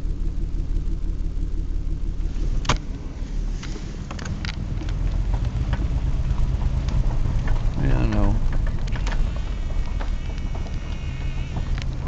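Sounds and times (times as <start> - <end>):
car engine running: 0.0 - 12.0
sharp clicks: 6.4 - 12.0.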